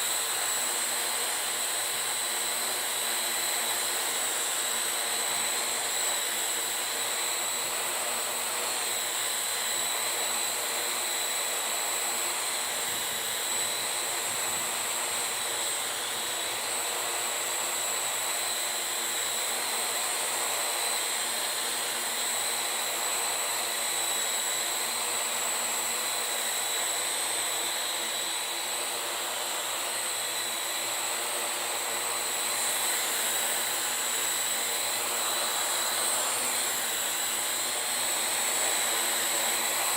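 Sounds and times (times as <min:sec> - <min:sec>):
drone motors whining: 0:01.6 - 0:22.4.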